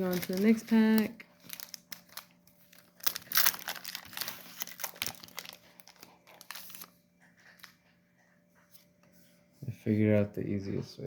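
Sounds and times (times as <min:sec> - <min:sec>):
foil wrapper crinkling and tearing: 0:00.0 - 0:07.0.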